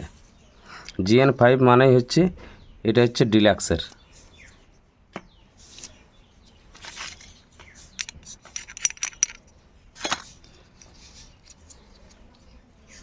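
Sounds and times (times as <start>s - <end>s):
metal parts clicking and clinking: 6.7s - 12.2s.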